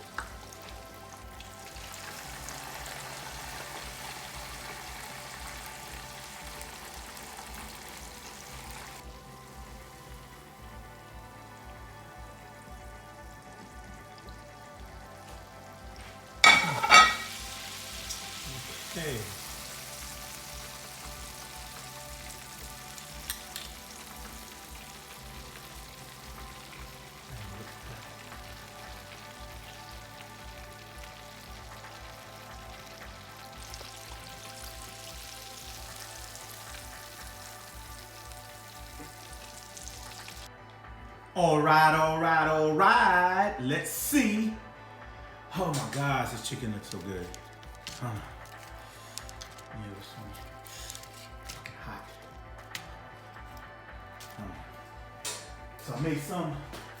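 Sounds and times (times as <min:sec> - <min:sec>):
food frying in hot oil: 0:00.0 - 0:40.5.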